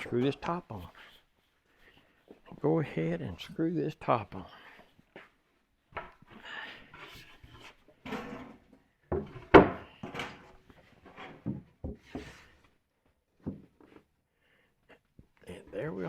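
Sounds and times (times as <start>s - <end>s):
wooden knocks and scrapes: 7.0s - 12.7s, 13.4s - 14.1s.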